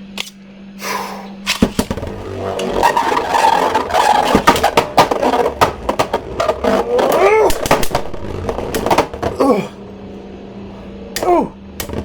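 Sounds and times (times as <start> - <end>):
spinning top whirr: 1.5 - 9.4
top landing in plastic stadium: 2.9 - 9.4.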